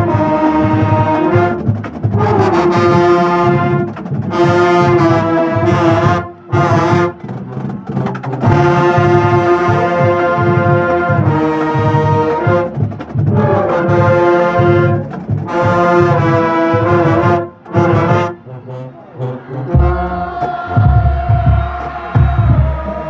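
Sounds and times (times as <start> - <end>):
brass playing held chords: 0.0 - 7.2, 8.4 - 23.0
steady drum beat: 0.0 - 18.2, 19.7 - 23.0
heavy bass drum hits: 19.8 - 23.0.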